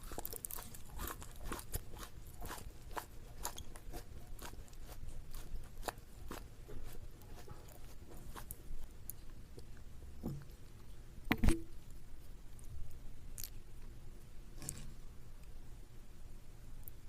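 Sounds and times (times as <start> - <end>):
person chewing food: 0.0 - 9.8.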